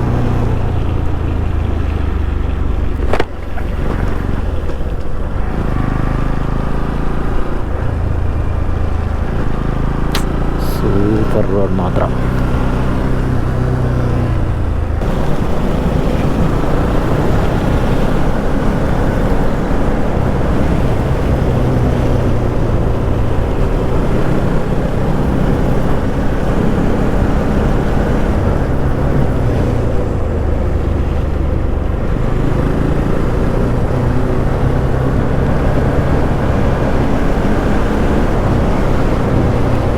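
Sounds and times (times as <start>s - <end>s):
motorcycle engine revving: 0.0s - 39.9s
steady rushing noise: 15.0s - 21.5s.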